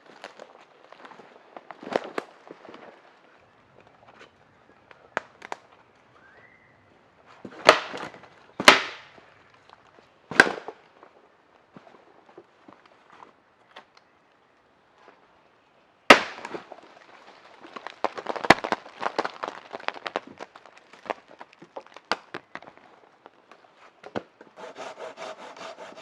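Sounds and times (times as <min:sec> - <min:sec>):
dry wood cracking: 0:03.7 - 0:06.1, 0:07.5 - 0:11.2, 0:16.1 - 0:24.2.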